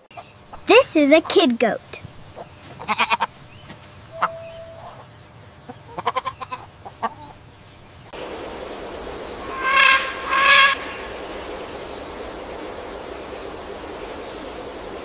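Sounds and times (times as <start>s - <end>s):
young goat bleating: 2.8s - 3.3s.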